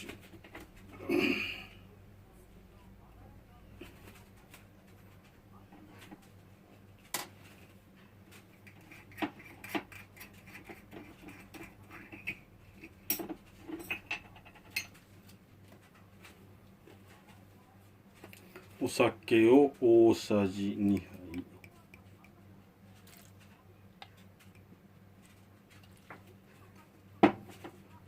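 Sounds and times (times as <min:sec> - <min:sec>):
kitchen utensils clicking and clinking: 0:09.0 - 0:15.0.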